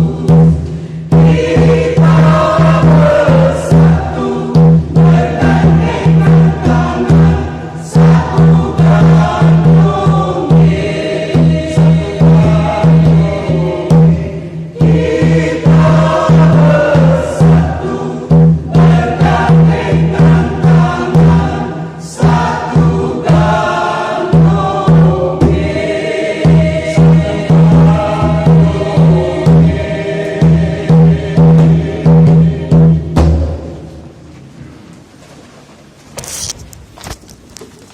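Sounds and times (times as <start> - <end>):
choir singing a hymn: 0.0 - 33.9
drums beating steady rhythm: 0.0 - 34.6.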